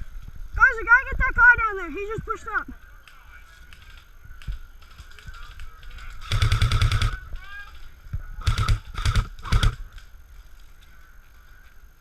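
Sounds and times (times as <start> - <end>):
airsoft gun firing bursts: 6.1 - 7.3, 8.4 - 9.9.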